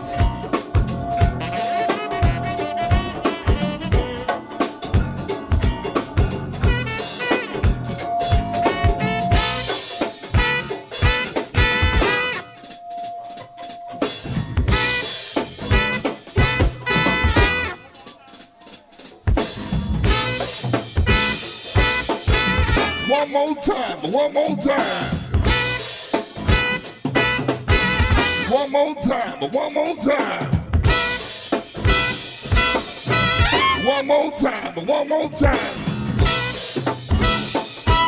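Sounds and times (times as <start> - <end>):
drum kit and percussion beat: 0.0 - 38.0
brass stabs: 1.0 - 5.4, 6.6 - 13.8, 14.7 - 18.6, 19.5 - 24.0, 24.8 - 28.8, 30.8 - 34.6, 35.5 - 38.0.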